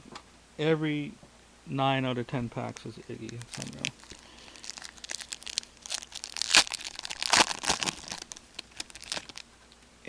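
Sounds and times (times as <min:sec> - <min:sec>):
foil wrapper crinkling and tearing: 0:02.8 - 0:09.5.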